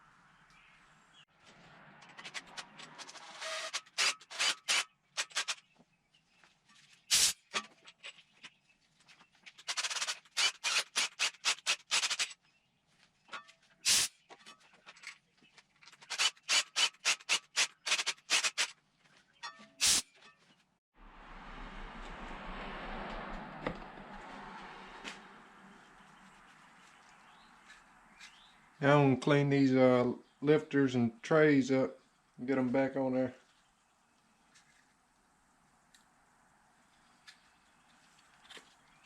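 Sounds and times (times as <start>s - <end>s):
compressed air blow gun blasts: 7.1s - 7.5s, 13.8s - 14.2s, 19.8s - 20.1s.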